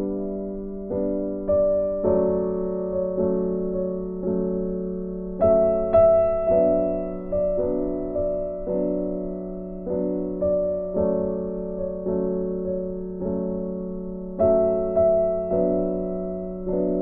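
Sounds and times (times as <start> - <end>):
slow soft piano chords: 0.0 - 17.0.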